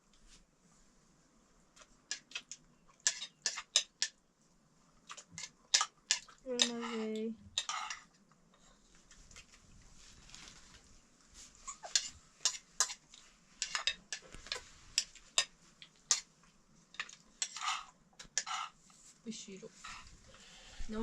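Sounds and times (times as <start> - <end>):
kitchenware clinking: 5.4 - 8.1, 13.6 - 15.5, 17.0 - 18.8.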